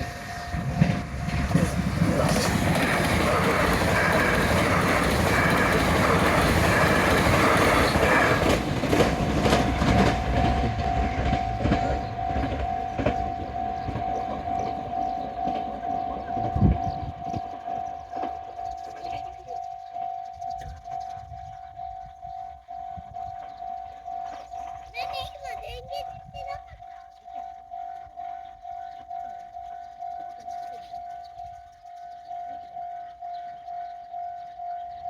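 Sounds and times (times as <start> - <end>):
train wheels clattering over rail joints: 0.0 - 18.8
level crossing bell clanging: 0.0 - 35.0.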